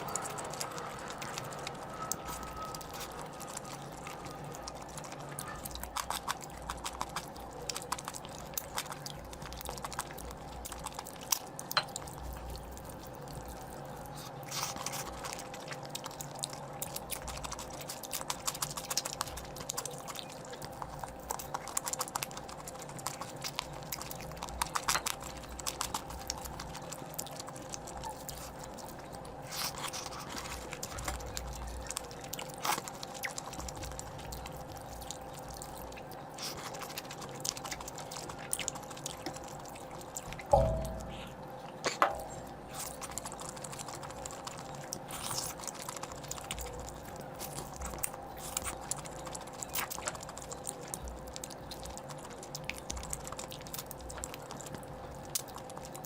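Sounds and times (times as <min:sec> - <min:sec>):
faint steady hum: 0:00.0 - 0:56.0
person chewing food: 0:00.0 - 0:56.0.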